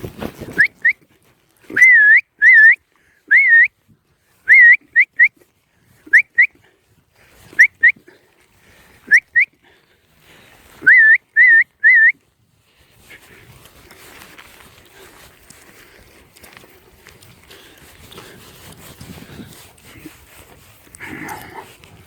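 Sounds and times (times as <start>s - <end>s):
shrill whistled commands: 0.5s - 1.0s, 1.7s - 3.7s, 4.5s - 5.3s, 6.1s - 6.6s, 7.6s - 8.0s, 9.1s - 9.6s, 10.8s - 12.2s.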